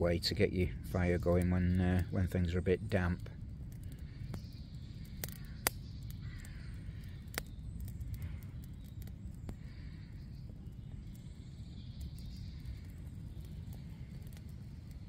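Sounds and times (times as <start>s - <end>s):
campfire crackling and popping: 0.0s - 15.0s
bird calling: 3.8s - 14.9s.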